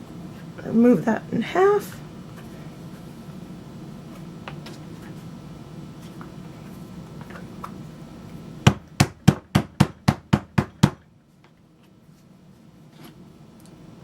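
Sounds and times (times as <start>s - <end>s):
hammer tapping: 8.7s - 11.0s.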